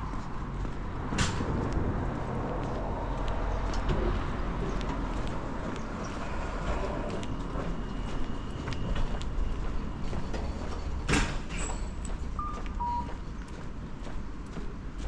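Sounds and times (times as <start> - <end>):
train rumble: 0.0 - 15.0.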